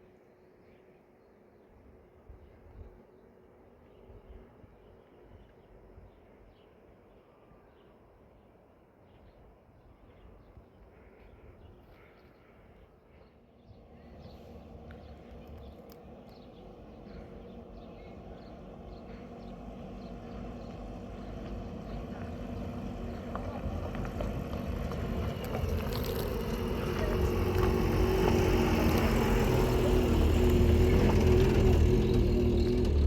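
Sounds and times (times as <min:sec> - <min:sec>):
vehicle engine rumble: 0:11.0 - 0:33.0.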